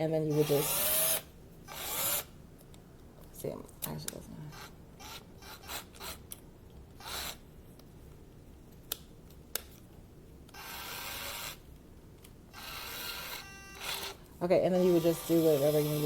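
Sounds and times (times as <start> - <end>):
drill whirring: 0.3 - 2.3, 4.5 - 6.2, 7.0 - 7.4, 10.5 - 11.6, 12.5 - 16.0
drill chuck rasping: 7.0 - 7.4.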